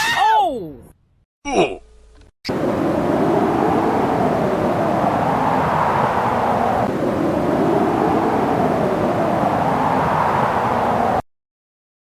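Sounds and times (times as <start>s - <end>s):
loud steady rushing noise: 2.5s - 11.2s.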